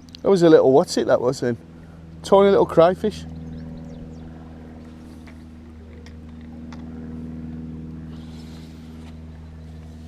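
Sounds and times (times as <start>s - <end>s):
motor droning: 0.0s - 10.0s.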